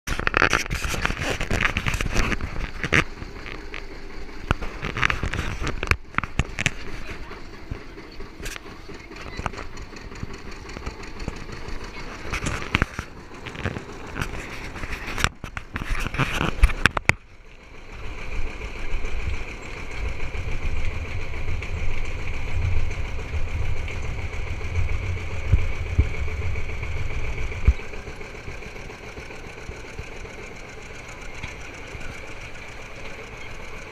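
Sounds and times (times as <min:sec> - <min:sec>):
tractor engine rumble: 0:00.0 - 0:33.9
high engine whine: 0:00.1 - 0:33.9
tractor knocks and rattles: 0:00.1 - 0:33.9.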